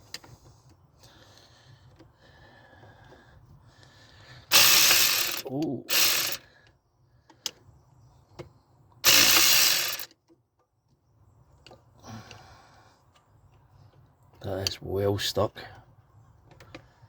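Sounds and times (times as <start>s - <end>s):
hand tool clicks: 4.5s - 6.4s, 9.1s - 10.1s
harsh rasping burst: 4.5s - 6.4s, 9.0s - 10.1s.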